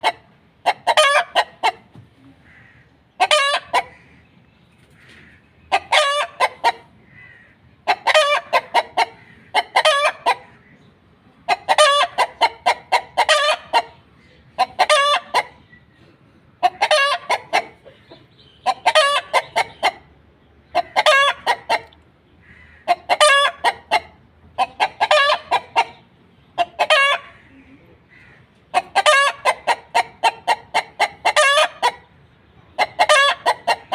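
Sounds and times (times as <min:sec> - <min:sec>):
chicken clucking: 0:00.0 - 0:07.1, 0:07.8 - 0:22.0, 0:22.8 - 0:33.9.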